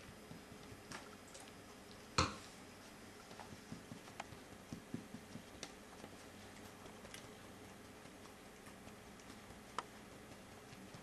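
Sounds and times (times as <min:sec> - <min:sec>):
puppy suckling on bottle: 0:03.2 - 0:11.0
soft low thumps: 0:03.4 - 0:05.9.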